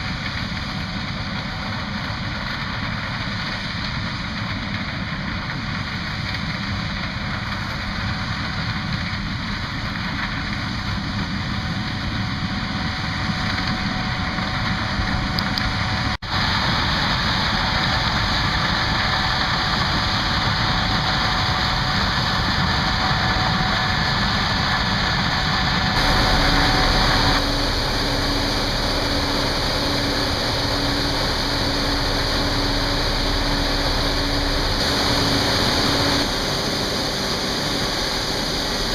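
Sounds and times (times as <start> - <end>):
combine harvester running: 0.0 - 38.9
faint whines: 17.7 - 38.9.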